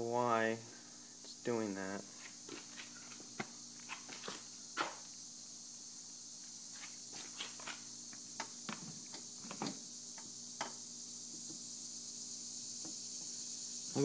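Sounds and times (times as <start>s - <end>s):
steady high hiss: 0.0s - 14.0s
footsteps: 2.1s - 5.0s.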